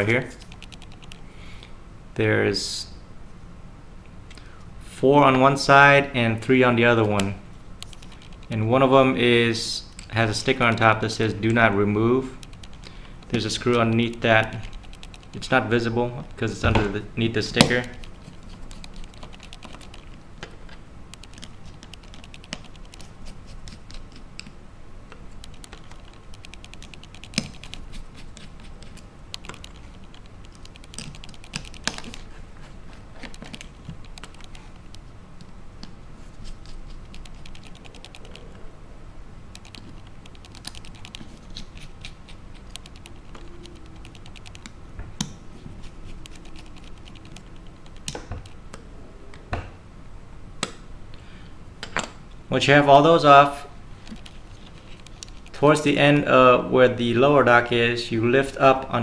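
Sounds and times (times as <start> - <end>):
faint steady hum: 0.0 - 59.0
screwdriver clicks and ticks: 25.4 - 27.9, 29.3 - 32.2, 39.5 - 41.8, 42.6 - 44.7.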